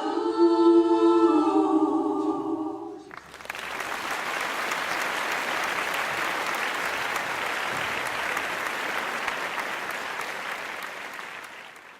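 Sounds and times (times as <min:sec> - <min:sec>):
audience applauding: 0:03.1 - 0:11.9.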